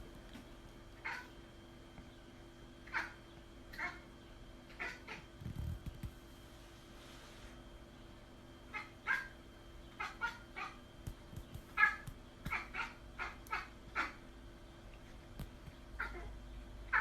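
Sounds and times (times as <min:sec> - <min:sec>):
cat calling: 0:01.0 - 0:01.4, 0:04.7 - 0:05.3, 0:08.7 - 0:09.4, 0:10.0 - 0:10.8, 0:11.8 - 0:14.2, 0:16.0 - 0:16.3.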